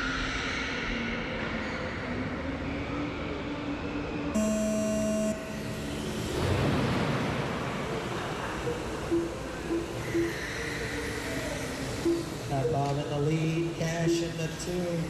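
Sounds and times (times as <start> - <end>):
electronic start tone: 4.4 - 6.2, 8.7 - 14.2
track noise: 4.4 - 15.0.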